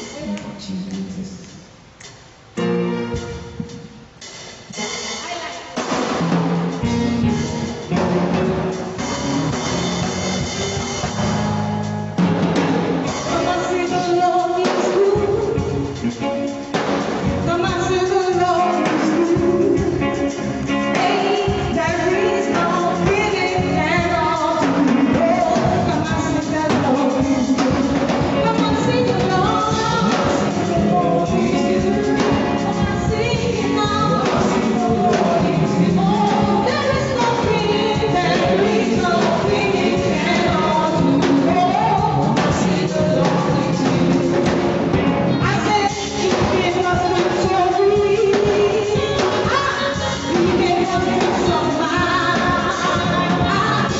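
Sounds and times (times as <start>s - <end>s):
band with drums: 0.0s - 53.9s
voices singing worship song: 16.8s - 53.9s.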